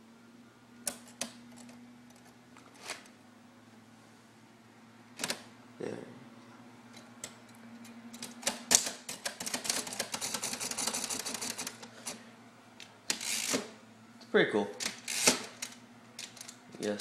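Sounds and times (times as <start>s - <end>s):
typewriter keystrokes clattering: 8.1s - 11.8s.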